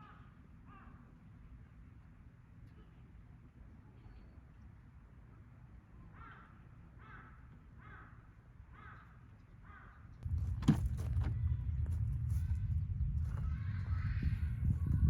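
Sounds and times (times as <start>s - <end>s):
low steady rumble: 10.1s - 15.0s.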